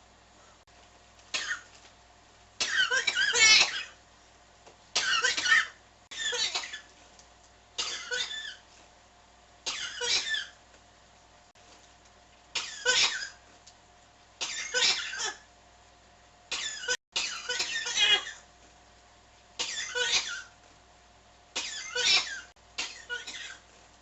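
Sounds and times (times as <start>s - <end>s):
person coughing: 2.6s - 4.0s, 5.0s - 6.9s, 7.8s - 8.6s, 9.7s - 10.6s, 12.6s - 13.4s, 14.4s - 15.4s, 16.5s - 18.4s, 19.6s - 20.6s, 21.6s - 23.6s.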